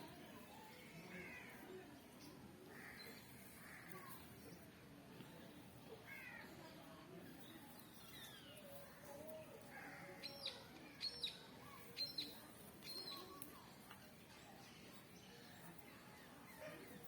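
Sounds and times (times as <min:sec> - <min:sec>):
small birds chirping: 0:07.3 - 0:17.0.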